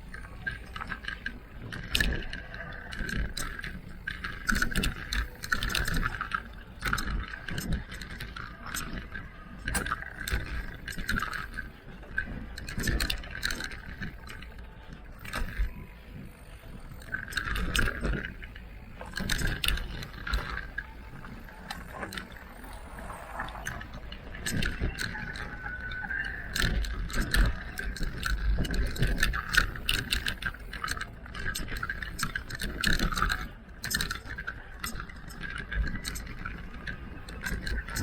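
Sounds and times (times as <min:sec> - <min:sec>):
electric bike motor whine: 0:00.0 - 0:38.0
wind on microphone: 0:15.3 - 0:33.6.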